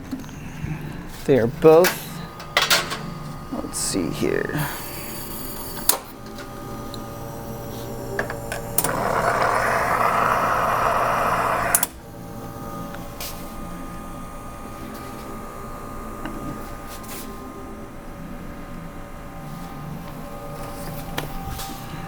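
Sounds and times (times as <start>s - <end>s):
pump hum: 0.0s - 22.0s
water rushing through espresso machine: 6.6s - 11.9s
espresso machine click: 8.2s - 11.9s.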